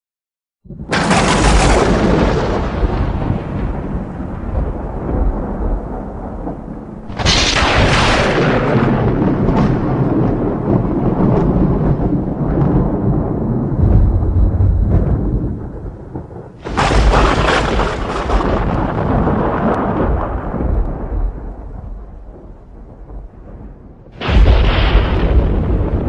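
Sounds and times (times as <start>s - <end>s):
sharp close thunderclap: 0.7s - 26.0s
thunder rumbling: 0.7s - 26.0s.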